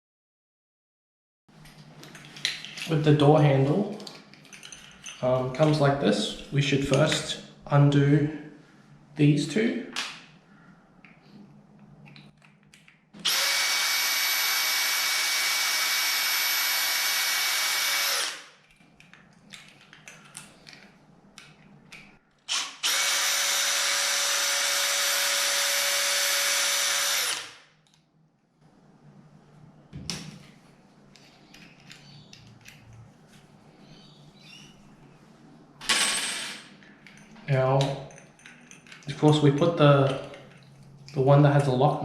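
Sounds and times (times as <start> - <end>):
small clicks and handling noises: 11.0 - 13.1, 18.6 - 22.6, 27.8 - 28.1, 30.1 - 33.6
power drill running: 13.2 - 18.5, 22.5 - 27.6.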